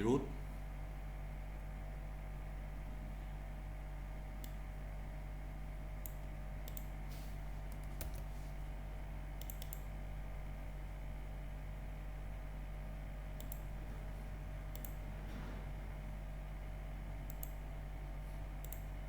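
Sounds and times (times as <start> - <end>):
low electrical hum: 0.0 - 19.0
computer keys clicking: 6.0 - 7.0, 7.7 - 8.3, 9.4 - 9.9, 13.4 - 13.7, 14.7 - 15.0, 17.2 - 17.6, 18.6 - 18.9.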